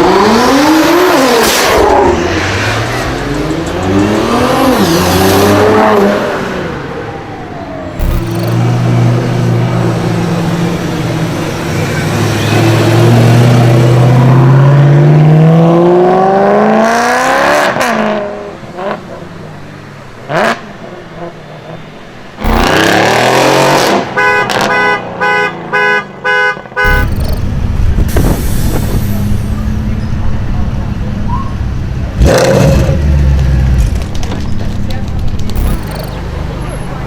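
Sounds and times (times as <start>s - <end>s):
sports car engine accelerating: 8.0s - 11.3s, 22.4s - 23.9s, 26.9s - 27.8s.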